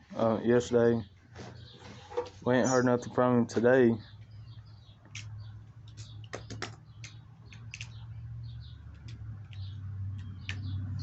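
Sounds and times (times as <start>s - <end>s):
faint bird chirps: 1.0s - 3.3s.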